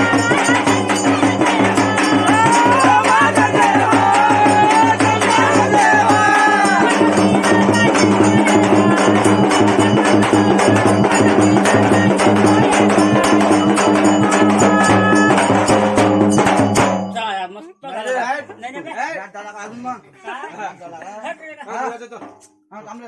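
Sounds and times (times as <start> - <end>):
person singing: 0.0 - 16.0
fast percussion strikes: 0.0 - 17.5, 22.1 - 22.6.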